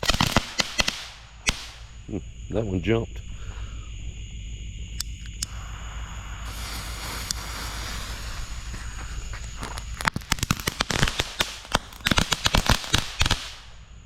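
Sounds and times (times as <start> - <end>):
fireworks crackling pops: 0.0 - 2.0, 5.0 - 13.9
fireworks fizzing hiss: 0.0 - 2.0, 5.2 - 13.9.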